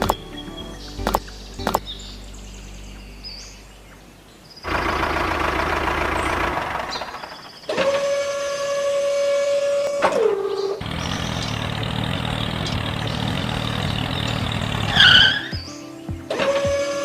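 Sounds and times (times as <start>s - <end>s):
noisy motor running: 4.7s - 8.1s, 10.8s - 15.4s
high-pitched motor whine: 10.8s - 15.6s.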